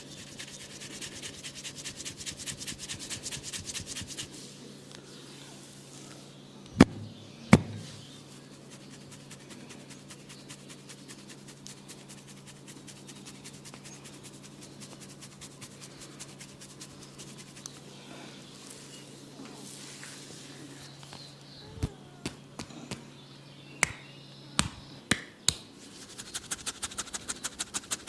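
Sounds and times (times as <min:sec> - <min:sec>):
low electrical hum: 0:00.0 - 0:28.0
sharp slaps: 0:23.8 - 0:24.0, 0:24.6 - 0:25.7.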